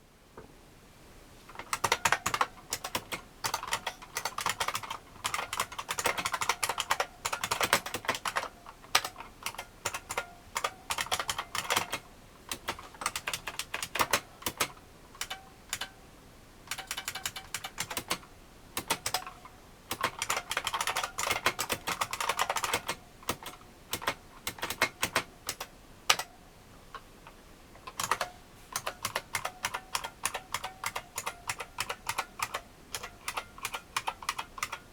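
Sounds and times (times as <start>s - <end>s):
keyboard key clicks: 27.9s - 34.8s.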